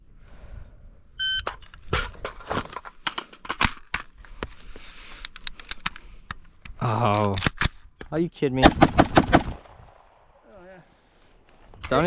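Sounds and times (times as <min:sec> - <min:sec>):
electronic beep: 0:01.2 - 0:01.5
gunshots: 0:08.6 - 0:10.1.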